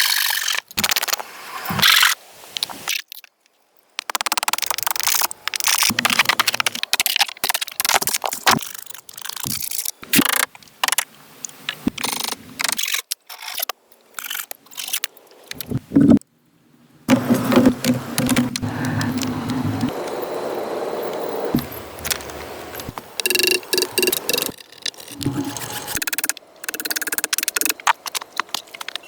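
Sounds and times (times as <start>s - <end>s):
wood scraping and crunching: 17.1s - 20.2s.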